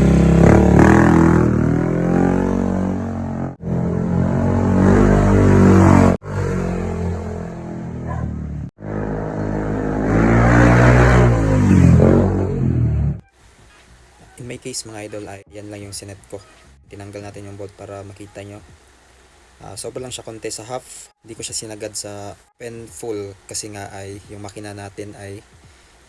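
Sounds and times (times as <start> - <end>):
scooter engine revving: 0.0 - 13.3.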